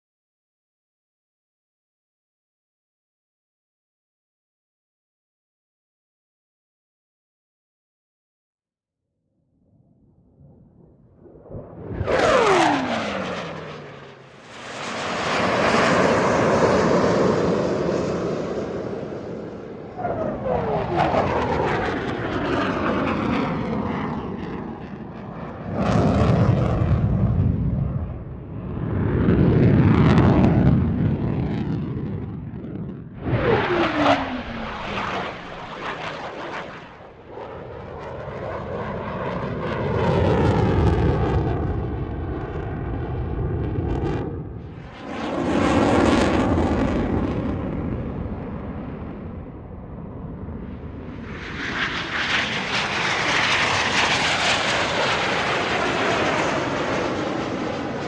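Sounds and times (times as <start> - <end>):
fighter jets passing: 10.3 - 58.0
crackling jet engine surge: 10.4 - 24.1, 25.7 - 38.6.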